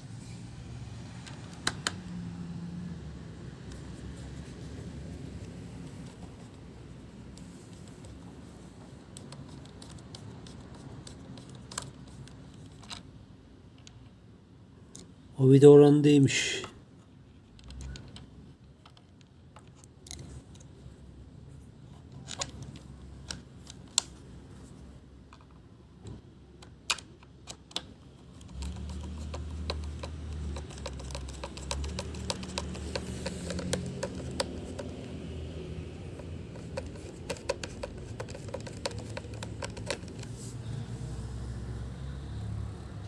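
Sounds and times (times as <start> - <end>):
plastic parts clicking and tapping: 9.1 - 13.0, 17.4 - 20.7, 25.3 - 40.7.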